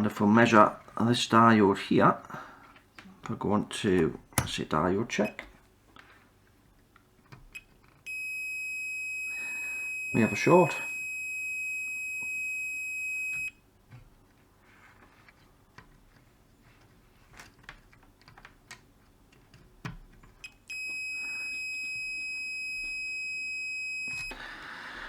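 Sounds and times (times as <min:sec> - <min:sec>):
probes clicking and tapping: 0:03.2 - 0:05.6
multimeter high beep: 0:08.1 - 0:13.6, 0:20.7 - 0:24.4.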